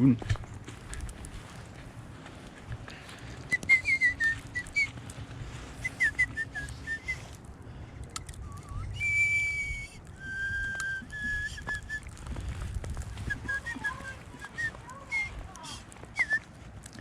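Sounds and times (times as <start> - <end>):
whistled notes: 3.4 - 5.0, 5.7 - 7.3, 8.4 - 12.2, 13.1 - 16.5.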